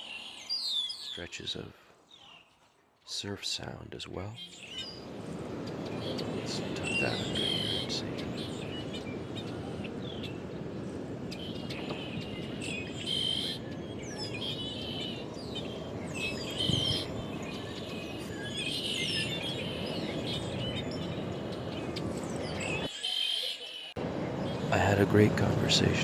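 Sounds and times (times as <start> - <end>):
blackbirds chirping and whistling: 0.0 - 1.2, 4.4 - 10.4, 11.3 - 24.7
ocean surf: 4.2 - 22.9, 24.0 - 26.0.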